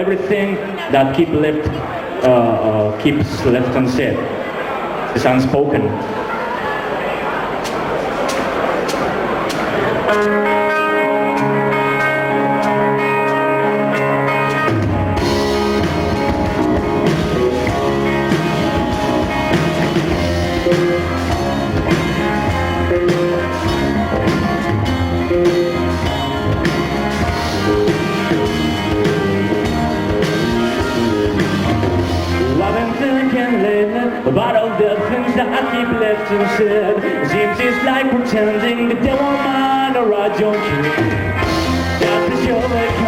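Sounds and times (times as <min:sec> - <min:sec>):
drums: 0:05.9 - 0:33.3, 0:40.5 - 0:43.0
bass guitar: 0:07.8 - 0:43.0
guitar chords: 0:07.8 - 0:43.0.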